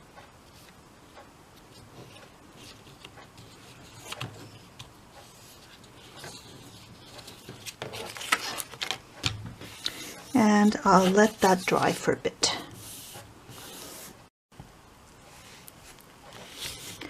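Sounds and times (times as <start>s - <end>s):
paper tapping and rustling: 1.9s - 10.1s.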